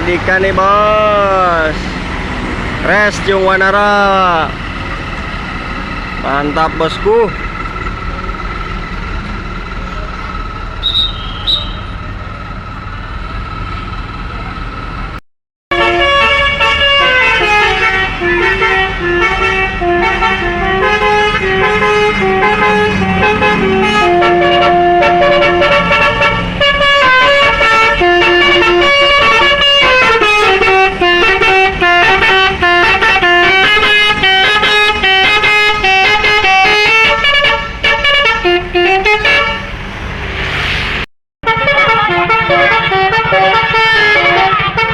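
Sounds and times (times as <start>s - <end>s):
road vehicle noise: 0.0s - 44.9s
musical bus horn playing a tune: 10.8s - 12.0s, 15.7s - 39.8s, 41.4s - 44.9s.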